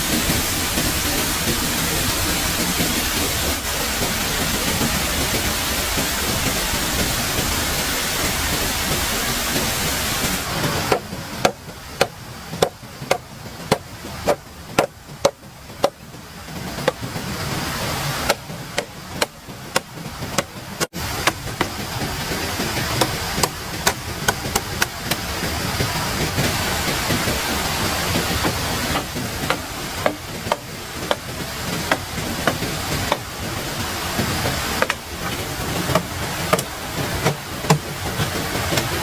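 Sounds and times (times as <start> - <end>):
steady rushing noise: 0.0 - 39.0
hand tool striking: 10.6 - 25.4, 28.3 - 39.0.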